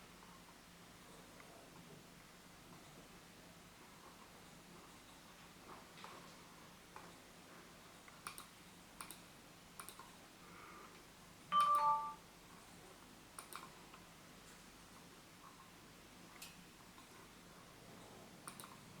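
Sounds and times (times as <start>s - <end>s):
soft clicks: 8.1s - 10.2s, 13.4s - 14.6s, 18.4s - 18.8s
two-note electronic chime: 11.5s - 12.2s.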